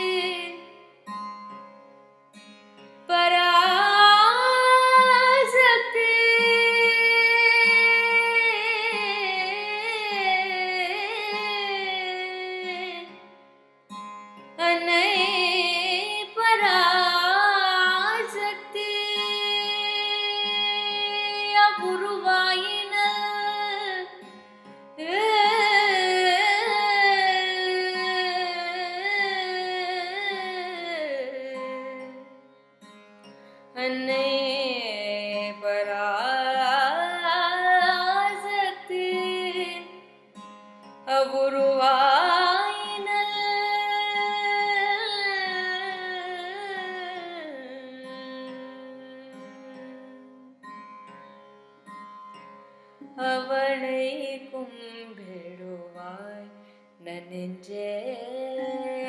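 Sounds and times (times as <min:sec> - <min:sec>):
woman singing: 0:00.0 - 0:00.9, 0:03.0 - 0:13.3, 0:14.6 - 0:32.5, 0:33.7 - 0:40.2, 0:41.0 - 0:51.0, 0:53.0 - 0:59.0
woman singing a long wavering note: 0:25.0 - 0:32.2, 0:41.1 - 0:50.6, 0:57.1 - 0:59.0.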